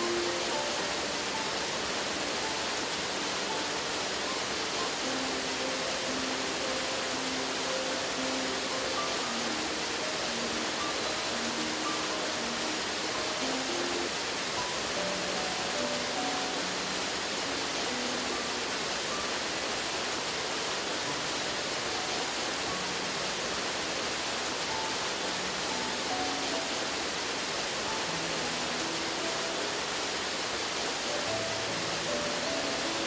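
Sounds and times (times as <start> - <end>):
soft music of scattered notes: 0.0 - 33.0
waterfall roaring: 0.0 - 33.0.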